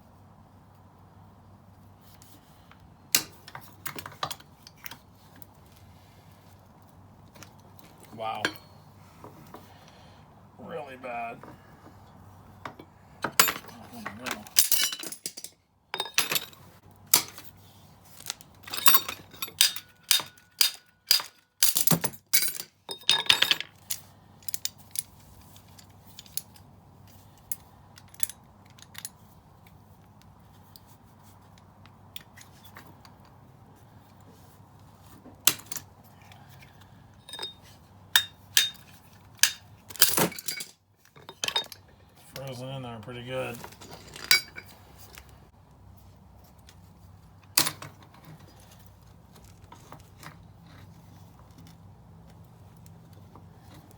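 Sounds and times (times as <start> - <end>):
metal hand tools clinking: 13.2 - 16.6, 18.6 - 24.8, 37.2 - 41.8, 43.8 - 44.8.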